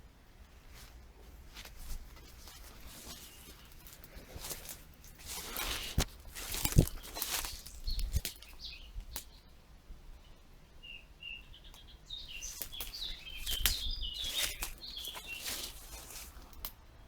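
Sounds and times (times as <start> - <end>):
sharp clicks and scuffs: 1.5 - 8.6, 12.5 - 16.8
small birds chirping: 2.0 - 17.0.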